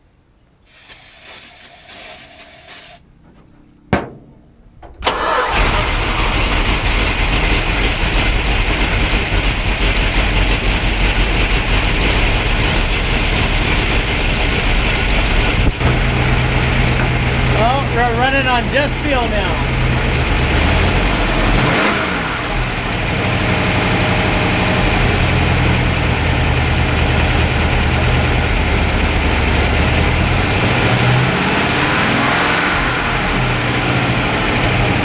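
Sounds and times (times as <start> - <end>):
brief hiss: 0.6 - 3.0
exhaust leak: 0.6 - 3.0, 5.1 - 17.6
car engine running loudly: 5.2 - 35.0.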